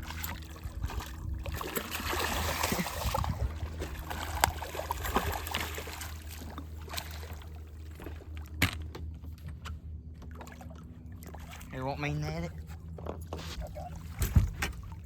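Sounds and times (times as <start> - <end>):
steady low hum: 0.0 - 15.0
water splashing and sloshing: 0.0 - 15.0
knocks on boat: 8.6 - 9.1, 14.2 - 14.9.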